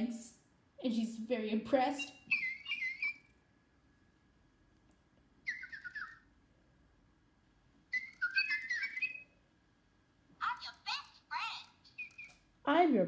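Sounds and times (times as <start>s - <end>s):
toy bird chirping electronically: 2.0s - 3.4s, 5.4s - 6.3s, 7.9s - 9.4s, 10.4s - 12.4s.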